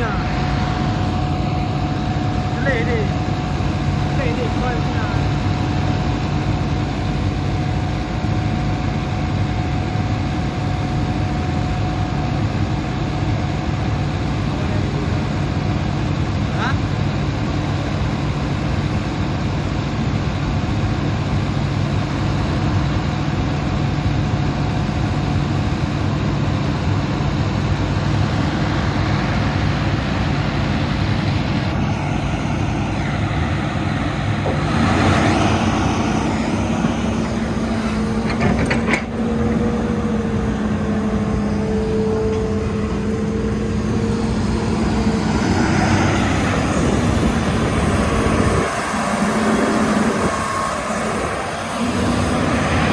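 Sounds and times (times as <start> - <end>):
excavator diesel engine droning: 0.0 - 52.9
brief clatter: 38.2 - 39.2.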